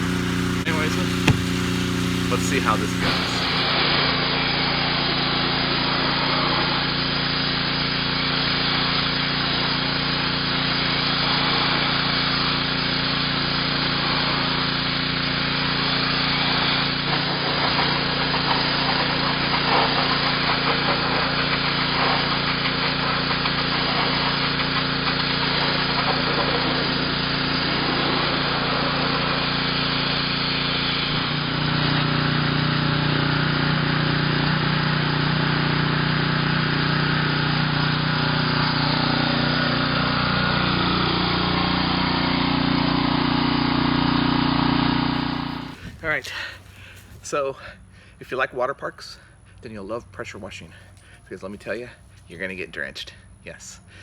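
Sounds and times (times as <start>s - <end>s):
water jet hissing against wood: 0.0s - 3.8s, 45.1s - 47.3s
pressure washer engine running: 0.0s - 47.2s.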